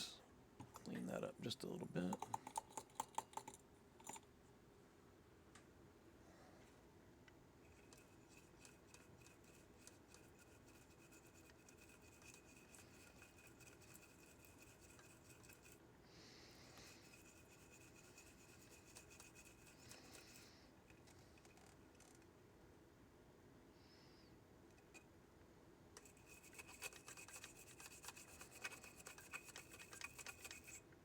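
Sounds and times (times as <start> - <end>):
tool scratching circuit board: 7.8 - 15.8, 26.0 - 30.8.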